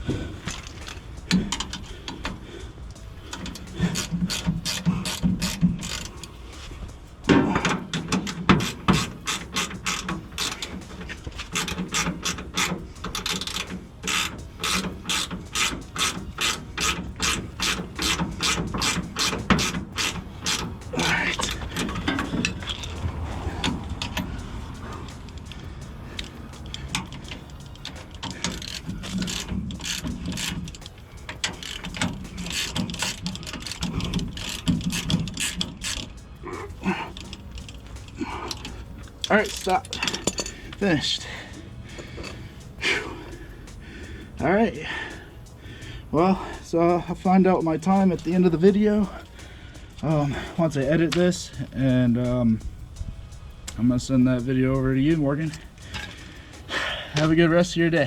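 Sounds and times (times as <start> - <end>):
ratchet wrench clicking: 0.0 - 58.0.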